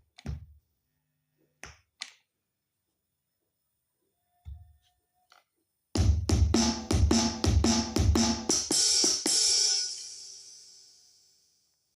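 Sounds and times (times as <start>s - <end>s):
electronic drum fill: 6.0s - 10.1s.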